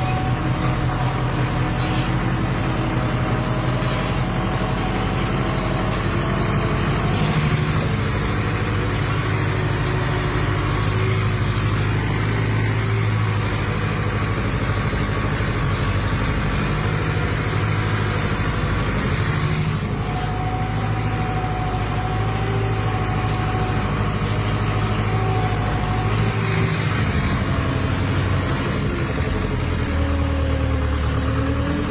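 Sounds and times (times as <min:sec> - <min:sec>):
tractor diesel engine running: 0:00.0 - 0:31.9.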